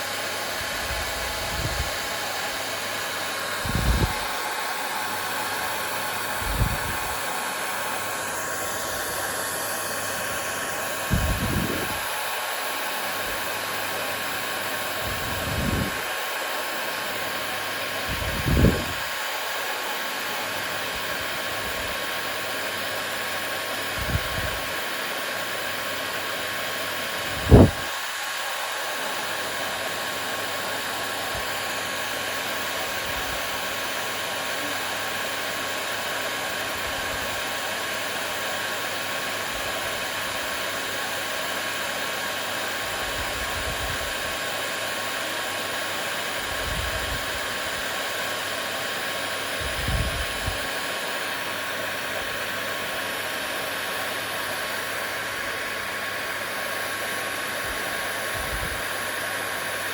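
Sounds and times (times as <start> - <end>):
hair dryer running: 0.0 - 59.9.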